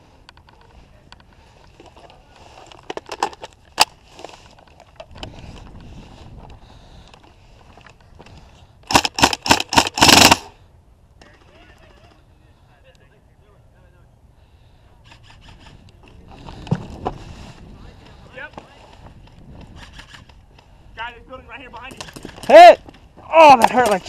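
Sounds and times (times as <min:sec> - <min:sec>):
airsoft gun firing: 0:08.9 - 0:10.5.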